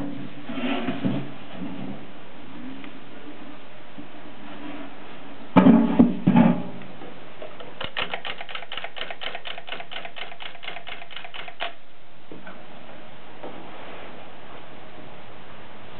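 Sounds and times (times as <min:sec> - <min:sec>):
typewriter clattering and clicking: 0:07.6 - 0:11.8.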